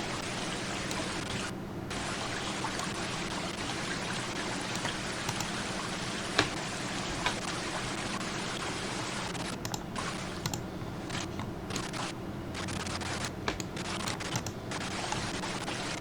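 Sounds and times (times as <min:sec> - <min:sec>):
steady hiss: 0:00.0 - 0:10.4
keyboard and mouse clicks: 0:00.8 - 0:01.1, 0:04.7 - 0:05.6, 0:09.6 - 0:15.3.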